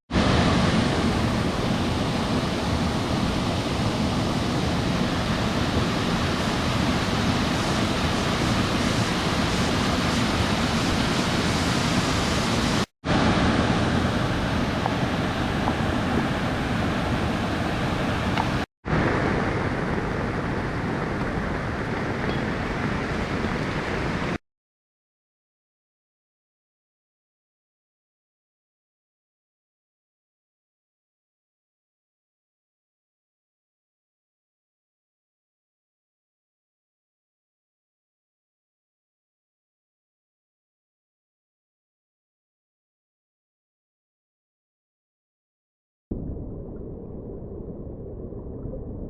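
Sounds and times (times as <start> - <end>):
rushing falling water: 0.2 - 24.4.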